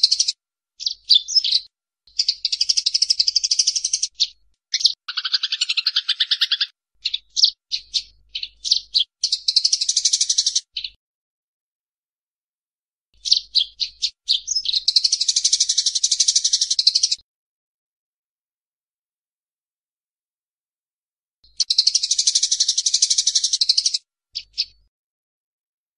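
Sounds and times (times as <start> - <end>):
sparrows chattering calls: 0.0 - 11.0, 13.2 - 17.2, 21.5 - 24.8.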